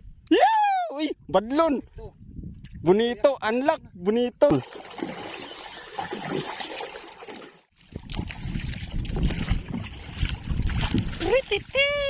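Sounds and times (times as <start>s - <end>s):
water sloshing around boat: 4.5s - 12.0s.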